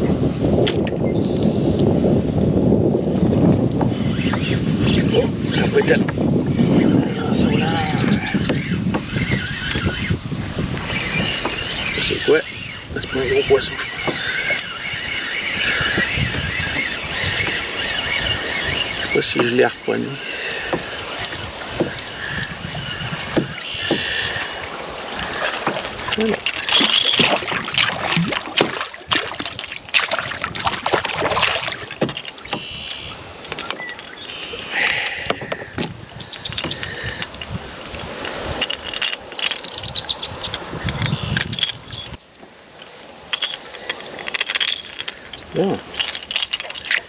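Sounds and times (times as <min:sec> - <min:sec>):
fishing reel clicking and whirring: 0:06.5 - 0:10.2, 0:10.8 - 0:29.7
water washing: 0:10.7 - 0:36.0, 0:43.2 - 0:47.0
tackle knocking and rattling: 0:25.4 - 0:32.6.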